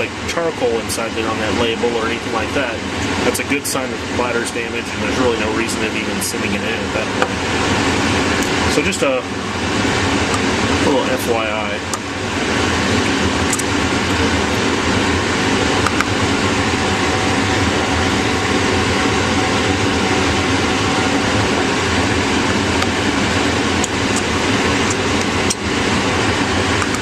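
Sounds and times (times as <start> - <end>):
fan whooshing: 0.0 - 27.0.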